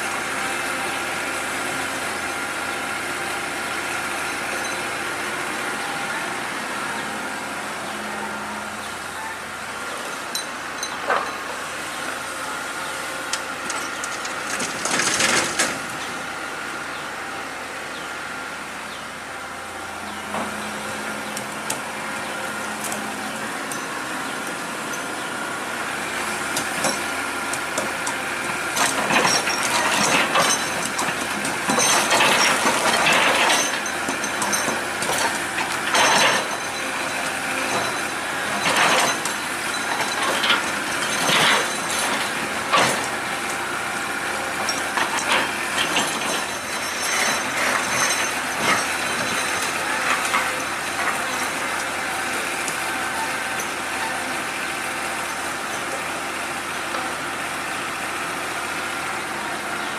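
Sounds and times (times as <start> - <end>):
excavator mechanical noise: 0.0 - 59.9
clanking and scraping: 10.1 - 11.6, 13.3 - 15.9, 28.7 - 43.2, 44.5 - 51.9.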